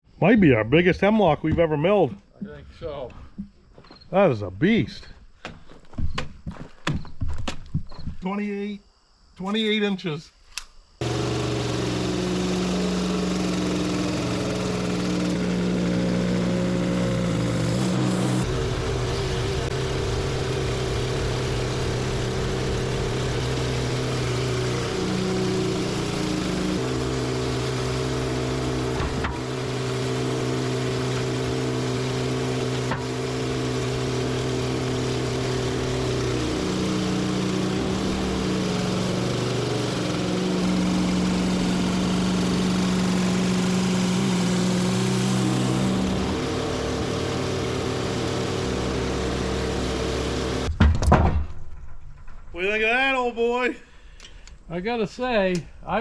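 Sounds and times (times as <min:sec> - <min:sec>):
sawmill engine running under load: 0:11.0 - 0:50.7.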